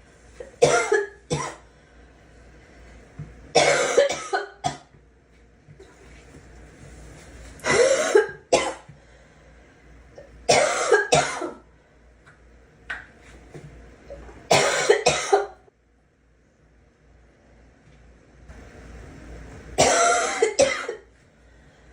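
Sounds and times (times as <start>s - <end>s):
girl coughing: 0.6s - 1.6s, 3.6s - 4.9s, 7.6s - 8.9s, 10.5s - 11.6s, 14.5s - 15.6s, 19.8s - 21.1s.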